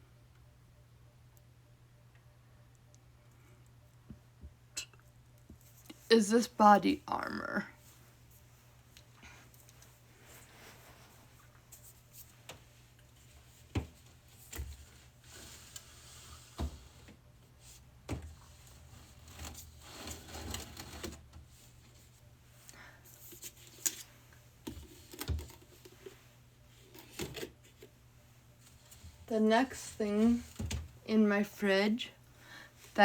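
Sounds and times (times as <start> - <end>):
soft rustle: 7.8 - 31.0.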